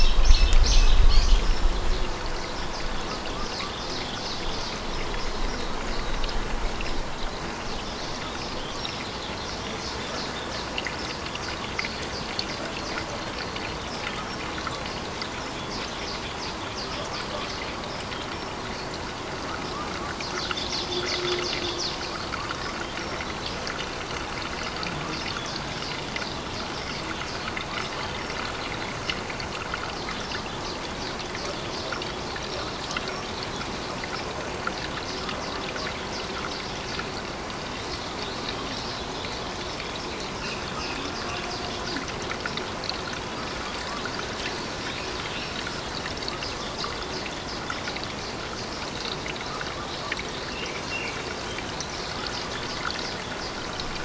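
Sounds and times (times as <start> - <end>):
water drips and splashes: 0.0 - 54.0
water trickling into pond: 0.0 - 54.0.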